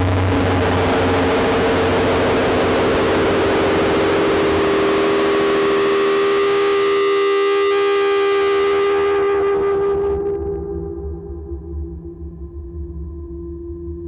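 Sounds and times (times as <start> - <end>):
dense wash of noise: 0.0 - 10.6
sustained synthesizer drone tones: 0.0 - 14.0.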